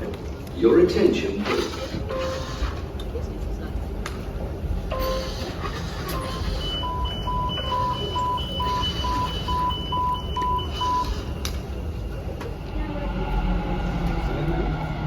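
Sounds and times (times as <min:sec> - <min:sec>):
two-tone electronic warning beeps: 0:04.9 - 0:05.5, 0:06.1 - 0:12.3
steady low rumble: 0:11.4 - 0:15.0.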